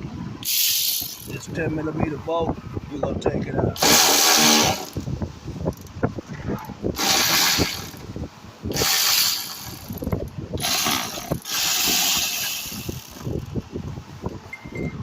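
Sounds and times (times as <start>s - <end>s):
hand ratchet clicking: 0.4s - 1.4s, 3.8s - 6.0s, 7.0s - 8.1s, 8.7s - 13.6s.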